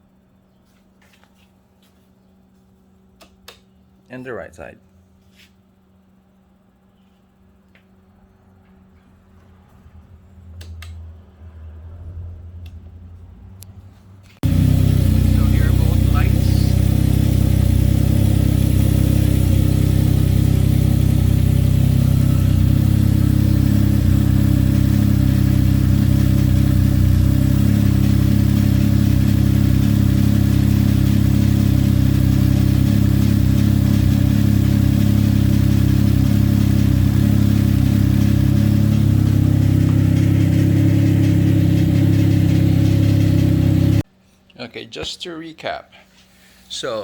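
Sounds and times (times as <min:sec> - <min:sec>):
motorcycle engine idling: 0:14.4 - 0:44.0.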